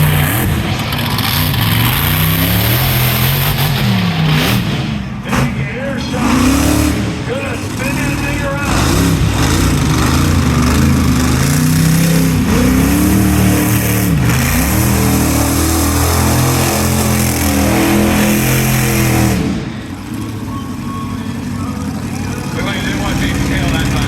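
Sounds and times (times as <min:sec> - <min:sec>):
truck engine revving: 0:00.0 - 0:24.0.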